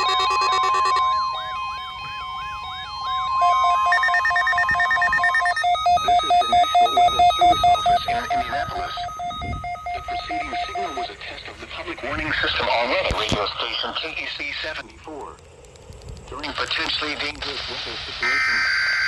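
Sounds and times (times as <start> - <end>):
warbling siren-like tone: 0.0 - 11.4, 18.2 - 19.0
rapid two-pitch beeping: 0.0 - 11.9, 18.2 - 19.0
steady high tone: 0.0 - 12.9, 18.2 - 19.0
faint radio voice: 6.0 - 9.1, 10.1 - 15.1, 16.3 - 18.7.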